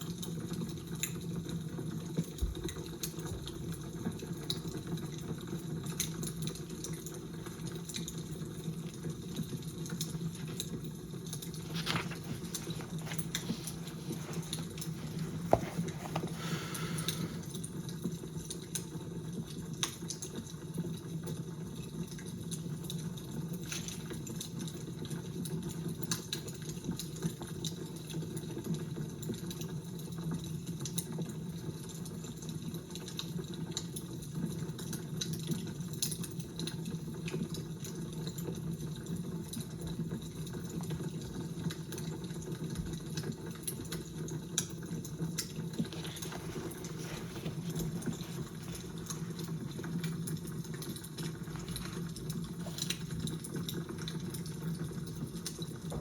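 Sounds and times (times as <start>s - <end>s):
fire crackling: 6.0s - 19.9s, 43.3s - 56.0s.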